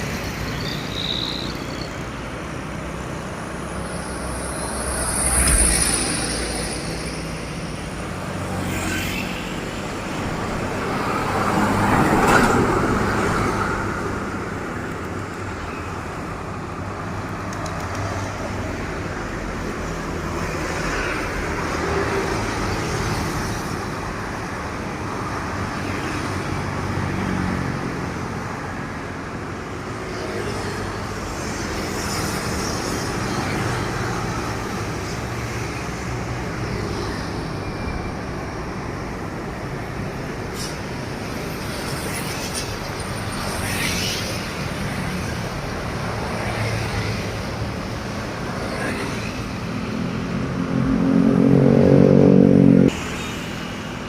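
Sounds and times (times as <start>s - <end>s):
heavy trucks passing: 45.2s - 54.0s.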